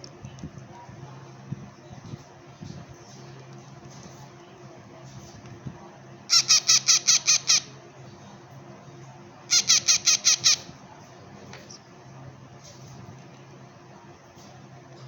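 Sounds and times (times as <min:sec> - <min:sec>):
parrot chick squeaky begging chirps: 0:06.3 - 0:07.7, 0:09.5 - 0:10.7.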